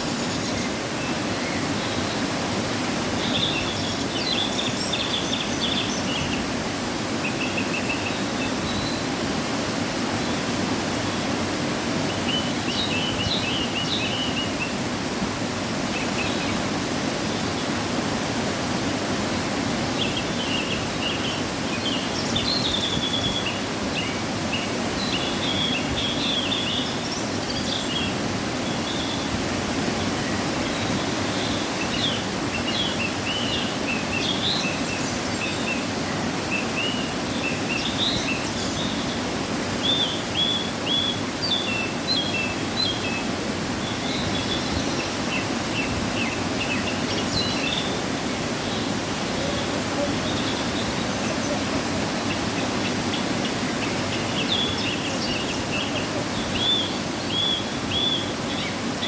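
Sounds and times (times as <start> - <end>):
waterfall rushing: 0.0 - 59.0
small birds chirping: 30.0 - 59.0.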